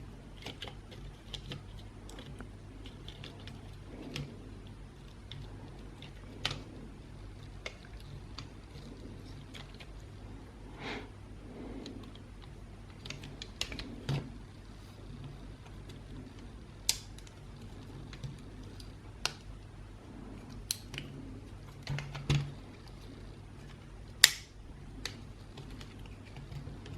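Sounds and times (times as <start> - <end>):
faint low hum: 0.0 - 26.9
plastic parts clicking and tapping: 21.7 - 22.6.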